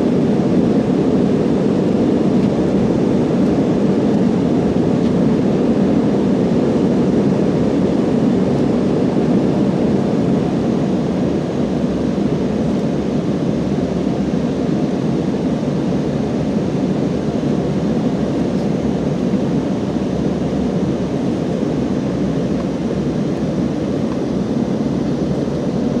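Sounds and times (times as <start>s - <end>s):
jet engine and airflow in cabin: 0.0s - 26.0s.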